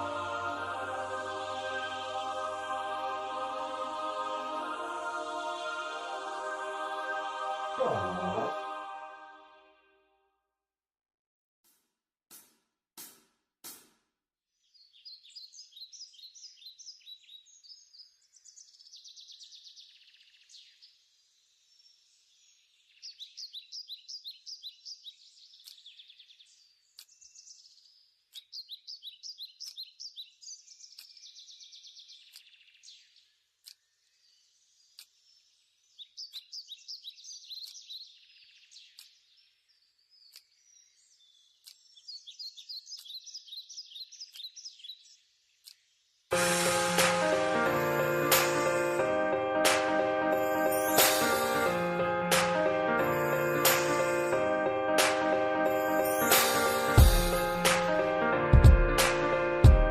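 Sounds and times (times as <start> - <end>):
faint clicks: 33.6 - 33.8.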